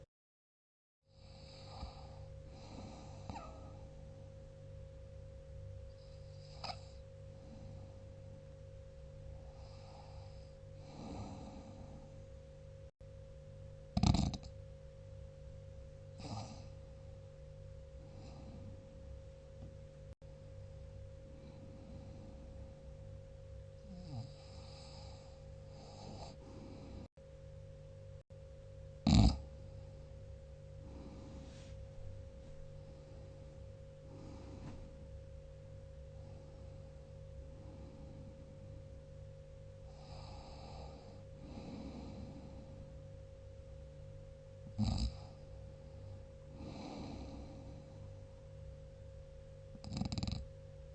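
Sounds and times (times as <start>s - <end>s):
sleeper breathing: 1.1s - 4.0s, 9.3s - 12.3s, 18.0s - 18.9s, 21.2s - 23.0s, 23.8s - 27.1s, 30.7s - 35.1s, 36.1s - 38.8s, 39.8s - 43.0s, 45.1s - 48.3s
steady low hum: 1.1s - 50.9s.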